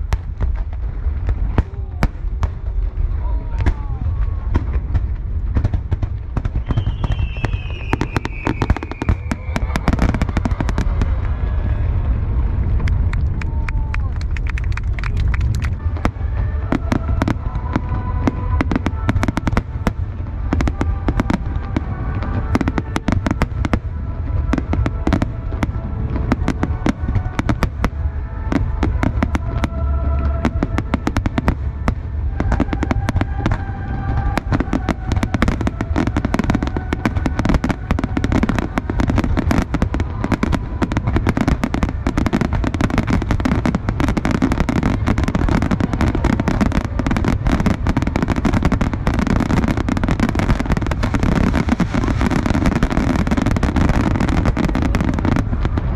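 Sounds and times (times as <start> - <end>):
firework bursts and crackles: 0.0 - 55.9
music with sustained notes: 15.0 - 55.9.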